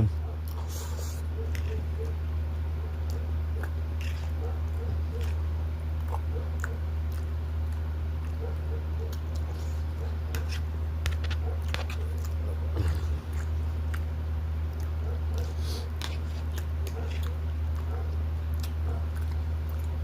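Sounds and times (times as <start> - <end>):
steady low hum: 0.0 - 20.0
person chewing food: 0.4 - 2.2, 2.9 - 20.0
mouth clicks and smacks: 14.7 - 15.0.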